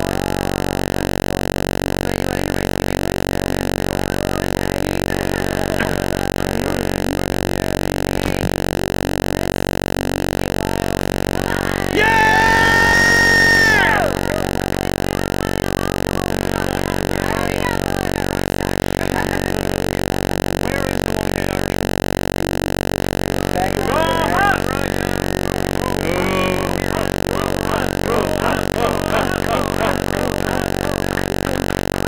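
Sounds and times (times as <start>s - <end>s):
loud steady droning hum: 0.0s - 32.0s
distant voices: 10.7s - 19.9s, 23.4s - 32.0s.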